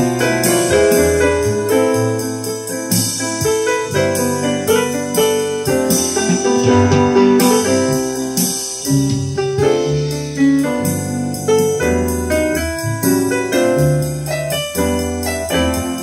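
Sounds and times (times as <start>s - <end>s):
jazz piano notes: 0.0s - 16.0s
deep low bass line: 3.2s - 16.0s.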